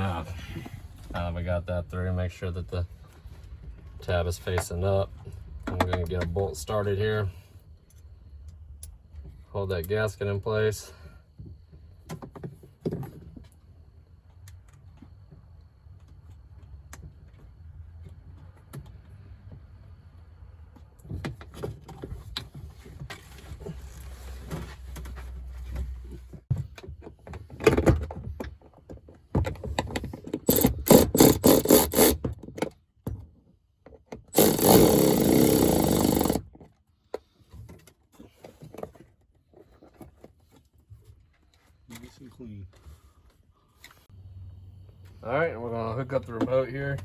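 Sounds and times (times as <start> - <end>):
hand tools knocking and clicking: 29.4 - 32.7
cordless power tool running: 30.5 - 32.2, 34.4 - 36.4.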